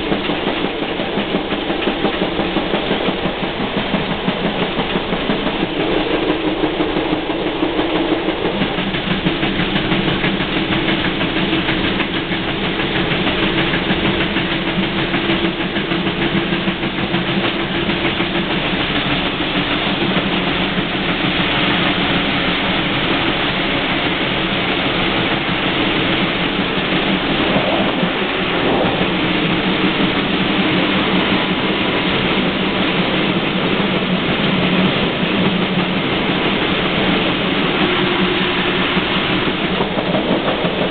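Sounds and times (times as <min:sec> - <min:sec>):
steam train running on track: 0:00.0 - 0:40.9
low hum: 0:25.4 - 0:34.3.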